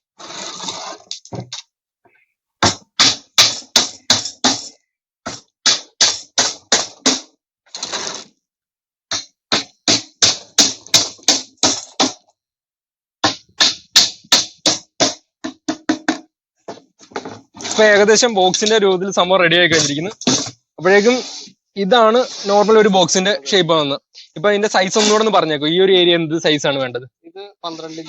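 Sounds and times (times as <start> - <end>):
hammer driving nails into plywood: 2.6 - 7.3, 9.1 - 12.2, 13.2 - 15.2.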